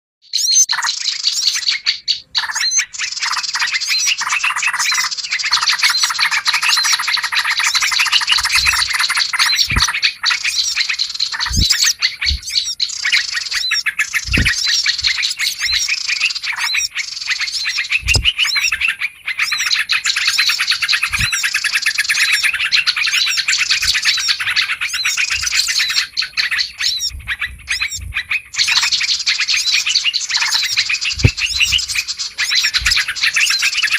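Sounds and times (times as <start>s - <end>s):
songbirds chirping and twittering: 0.2s - 33.9s
bulbul calls: 0.3s - 33.9s
low thuds: 8.2s - 9.0s, 9.6s - 9.9s, 11.4s - 12.6s, 14.2s - 15.8s, 18.0s - 18.8s, 21.1s - 21.3s, 27.1s - 28.3s, 31.1s - 32.0s, 32.8s - 33.0s.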